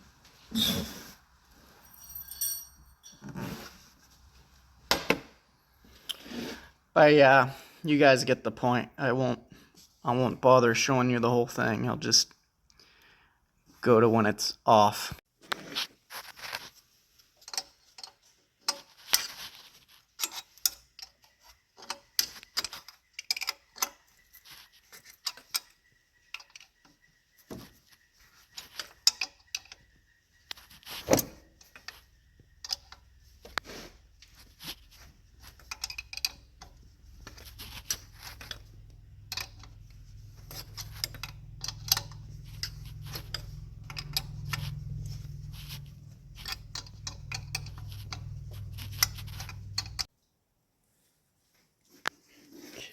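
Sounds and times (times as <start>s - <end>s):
metal tools clinking: 1.7s - 3.8s, 34.2s - 50.1s
low steady hum: 35.0s - 50.1s.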